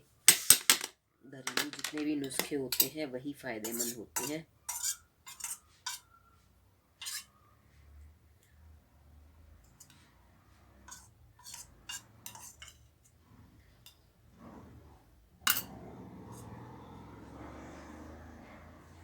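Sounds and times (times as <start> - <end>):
utensils clinking against dish: 1.5 - 3.0, 3.6 - 6.0, 7.0 - 7.3, 10.9 - 12.9, 15.5 - 15.7.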